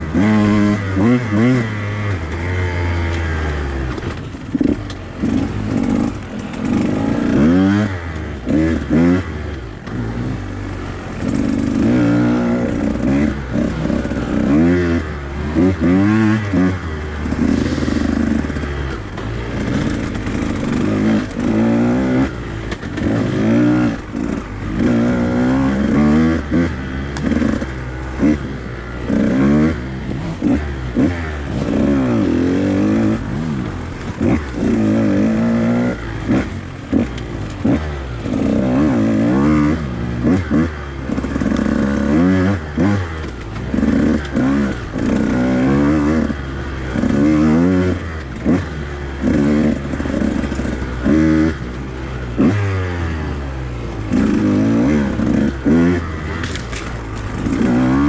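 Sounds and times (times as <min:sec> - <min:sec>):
two-stroke dirt bike engine revving: 0:00.0 - 0:58.0.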